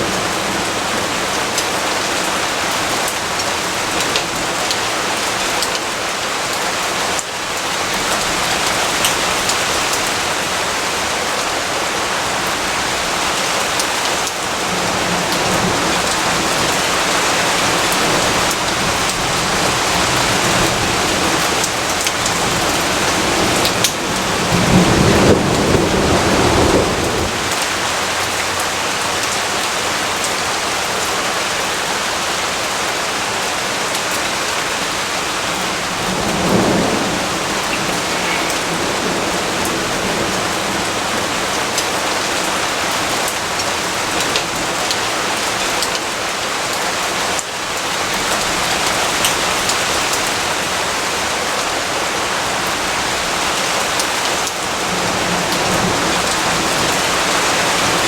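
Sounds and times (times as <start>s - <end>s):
heavy rain falling: 0.0s - 58.0s
distant thunder rumble: 14.6s - 28.4s, 35.1s - 42.3s.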